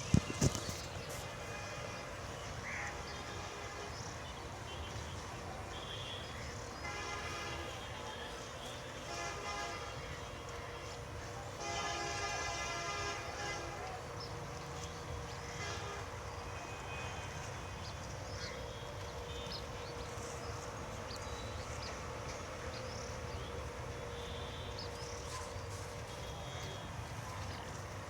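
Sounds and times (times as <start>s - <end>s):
birds chirping: 0.0s - 1.4s.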